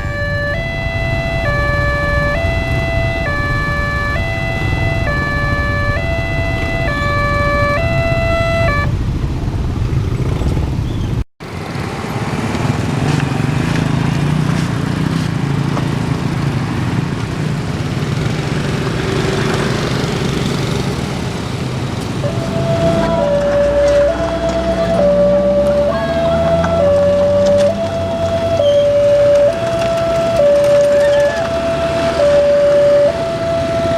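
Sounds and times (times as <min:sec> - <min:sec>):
two-tone warning siren: 0:00.0 - 0:09.1, 0:22.1 - 0:33.9.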